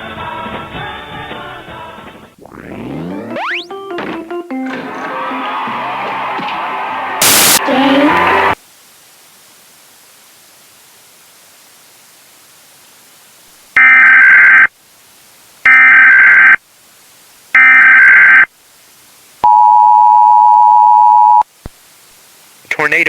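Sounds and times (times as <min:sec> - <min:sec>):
faint hiss: 0:07.2 - 0:13.8, 0:14.7 - 0:15.7, 0:16.6 - 0:17.6, 0:18.5 - 0:19.4, 0:21.4 - 0:23.0
digital data tone bursts: 0:13.8 - 0:14.7, 0:15.7 - 0:16.6, 0:17.6 - 0:18.5
two-tone attention signal: 0:13.8 - 0:14.7, 0:19.4 - 0:21.4.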